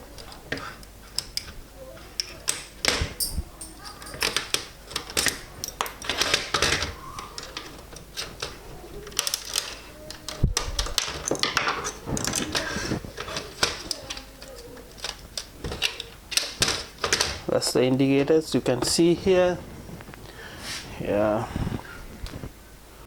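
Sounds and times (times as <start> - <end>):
plastic parts clicking and rattling: 0.1 - 19.4
plastic scraping: 4.4 - 20.9.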